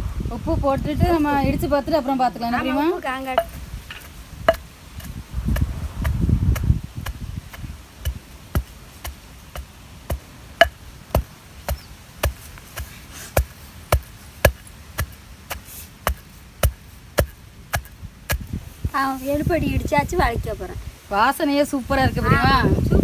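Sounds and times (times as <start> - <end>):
pestle pounding in mortar: 2.6 - 18.6.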